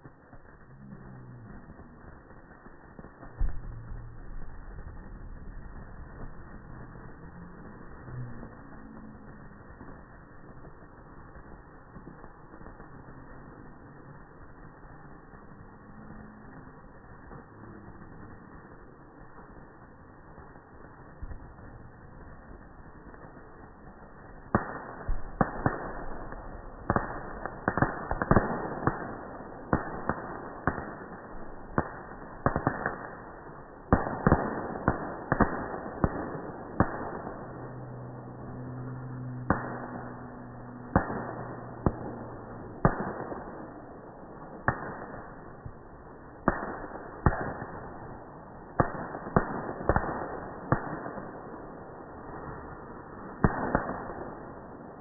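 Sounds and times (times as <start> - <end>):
steady low hum: 0.0 - 24.4, 36.3 - 46.3
fireworks bangs and cracks: 0.0 - 55.0.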